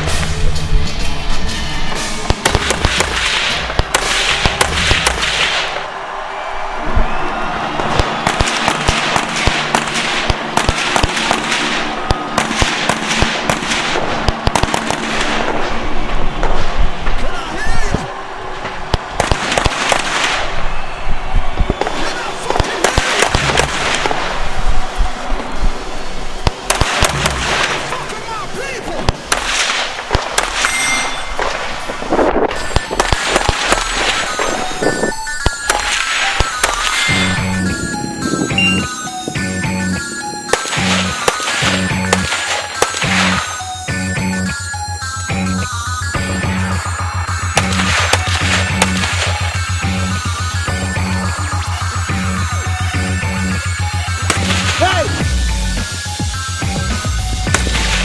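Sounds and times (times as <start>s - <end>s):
noisy background: 0.0s - 58.0s
rifle shots: 2.3s - 5.9s, 7.8s - 16.8s, 18.6s - 20.6s, 21.2s - 25.3s, 26.1s - 34.8s, 40.5s - 43.6s, 54.2s - 55.0s.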